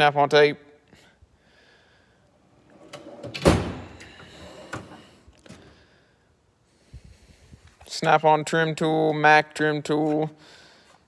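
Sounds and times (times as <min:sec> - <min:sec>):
metal drawer sliding on runners: 0:02.6 - 0:05.2
drawer rattling and clicking: 0:02.7 - 0:05.1
drawer shutting with a bang: 0:02.7 - 0:05.1.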